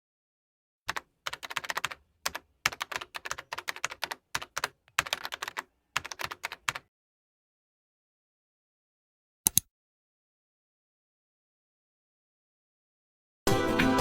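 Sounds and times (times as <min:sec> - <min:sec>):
keyboard key clicks: 0:09.5 - 0:09.7.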